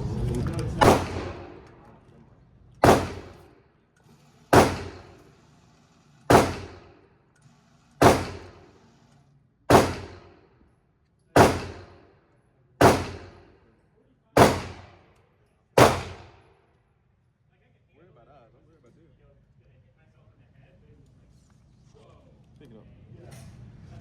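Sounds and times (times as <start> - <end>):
gunshots echoing indoors: 0.8 - 1.9, 2.8 - 3.4, 4.6 - 5.2, 6.3 - 6.9, 8.0 - 8.7, 9.7 - 10.4, 11.4 - 12.1, 12.8 - 13.6, 14.4 - 15.0, 15.8 - 16.6.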